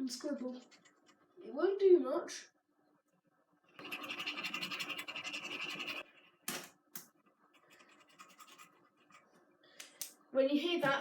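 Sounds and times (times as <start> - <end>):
pen scribbling on hard surface: 0.2 - 1.2, 3.8 - 6.4, 7.5 - 9.3.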